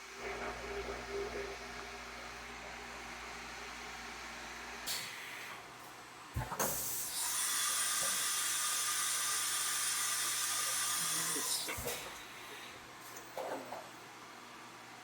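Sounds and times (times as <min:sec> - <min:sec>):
milling machine hissing: 0:06.8 - 0:12.7.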